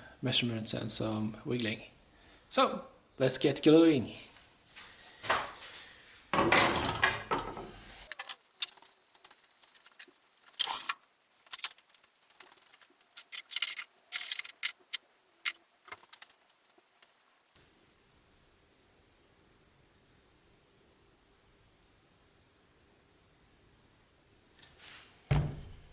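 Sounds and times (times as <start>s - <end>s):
scraping and rustling: 7.8s - 17.6s
sharp clicks and light rattles: 8.1s - 17.6s.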